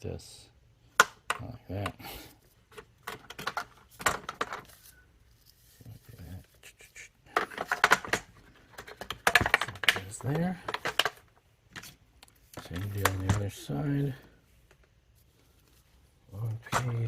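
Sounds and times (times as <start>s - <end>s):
plastic parts clicking and rattling: 2.6s - 4.9s, 7.3s - 15.0s, 16.4s - 17.0s.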